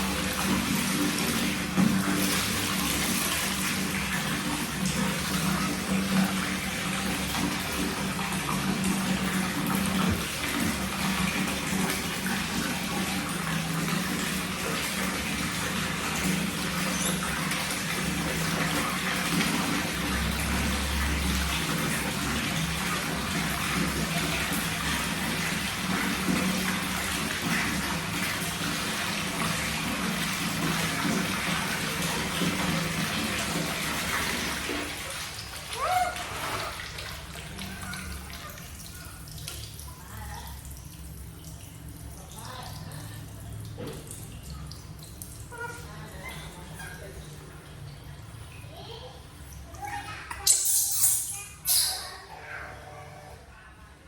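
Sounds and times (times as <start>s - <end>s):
tap water running and splashing: 0.0s - 52.4s.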